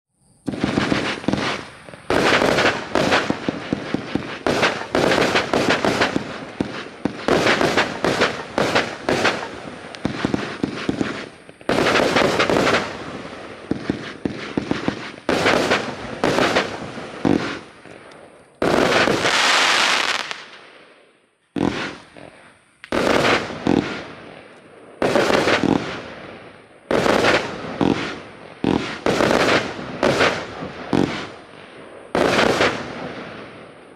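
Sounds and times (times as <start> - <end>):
firework launch shots and breaks: 0.4 - 13.0
firework rushing burst: 0.4 - 17.8, 18.6 - 20.6, 21.6 - 22.2, 22.9 - 24.2.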